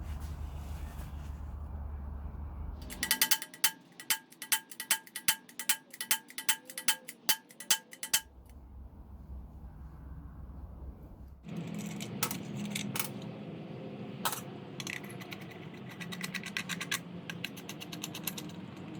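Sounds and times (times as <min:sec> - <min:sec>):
light metal-on-metal taps: 0:02.8 - 0:08.3.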